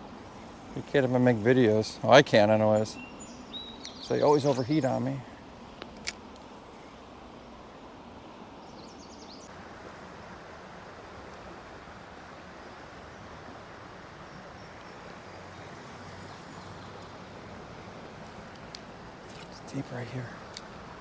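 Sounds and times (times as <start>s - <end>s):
river water rushing: 9.5s - 21.0s.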